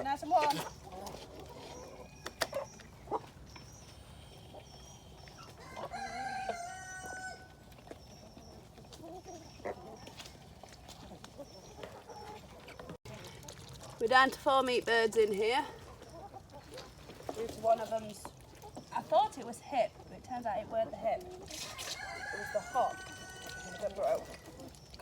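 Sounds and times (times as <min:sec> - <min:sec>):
rooster crowing: 0:05.6 - 0:07.6, 0:21.7 - 0:23.9.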